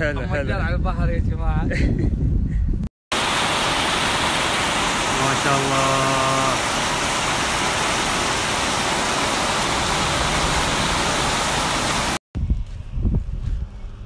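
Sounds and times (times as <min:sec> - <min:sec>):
floodwater rushing: 0:03.1 - 0:12.2.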